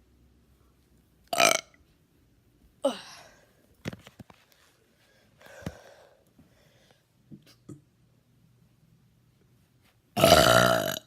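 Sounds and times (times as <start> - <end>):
person breathing: 4.4 - 7.2.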